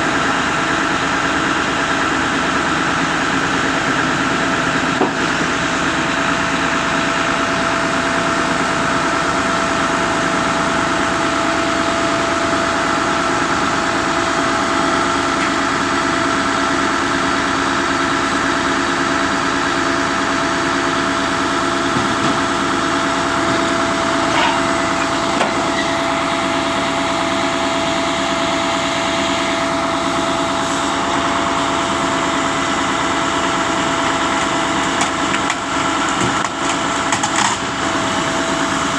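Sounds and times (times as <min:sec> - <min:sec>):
concrete pump engine running: 0:00.0 - 0:38.9.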